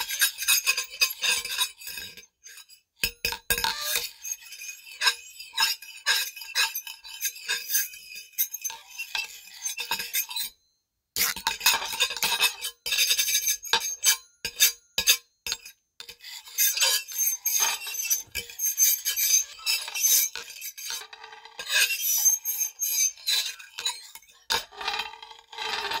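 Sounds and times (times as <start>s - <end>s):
knife scraping across a plate: 11.2s - 26.0s.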